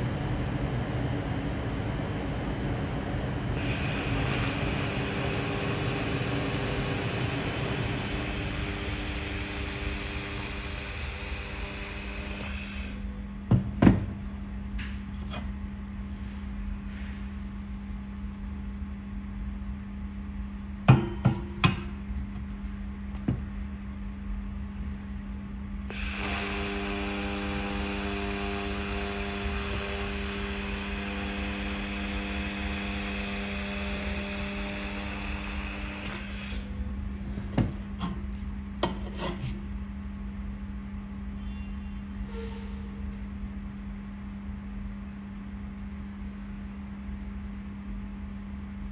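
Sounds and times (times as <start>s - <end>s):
laser welding machine humming: 0.0s - 13.3s, 25.8s - 40.6s.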